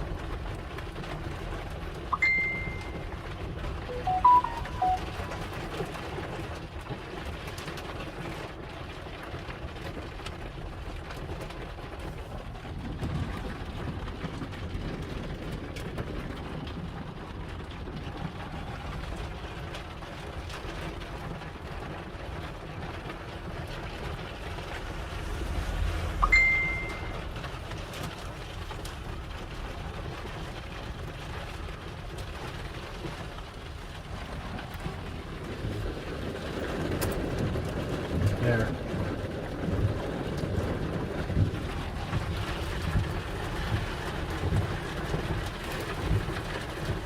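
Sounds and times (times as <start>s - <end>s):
wind and rain on a vehicle: 0.0s - 47.0s
short high beep: 2.2s - 3.1s, 3.9s - 5.5s, 26.2s - 27.2s
low boom: 24.2s - 26.3s.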